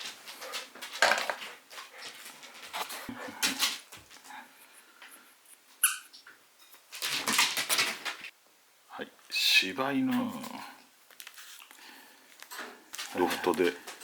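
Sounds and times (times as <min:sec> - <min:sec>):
dog squeaking: 0:05.8 - 0:06.2.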